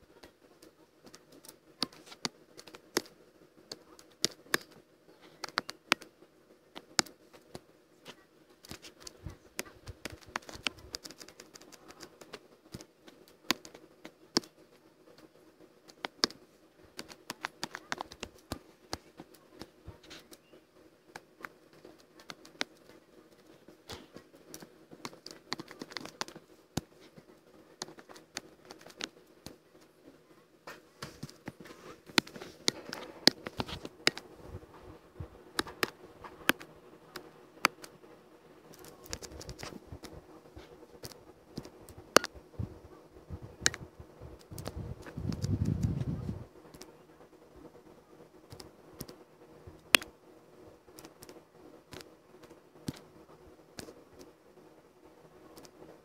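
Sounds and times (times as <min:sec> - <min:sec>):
steady low hum: 0:00.0 - 0:56.0
computer mouse and keyboard clicks: 0:00.2 - 0:06.1, 0:06.7 - 0:20.5, 0:21.1 - 0:27.2, 0:27.8 - 0:29.9, 0:30.6 - 0:34.3, 0:35.5 - 0:38.0, 0:38.7 - 0:42.4, 0:43.6 - 0:46.1, 0:48.5 - 0:49.2, 0:50.9 - 0:53.1, 0:53.8 - 0:54.3, 0:55.5 - 0:55.8.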